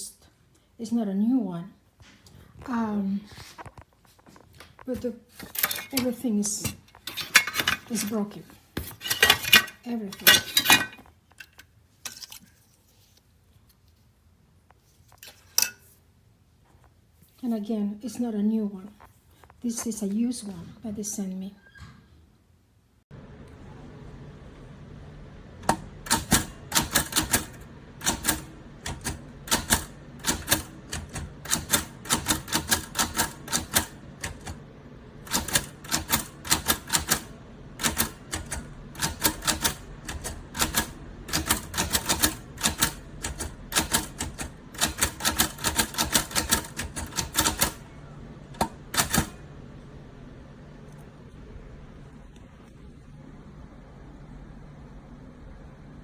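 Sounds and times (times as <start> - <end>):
steady low hum: 22.9 - 56.0
manual typewriter keys clacking: 25.6 - 34.6, 35.2 - 47.9, 48.5 - 49.4.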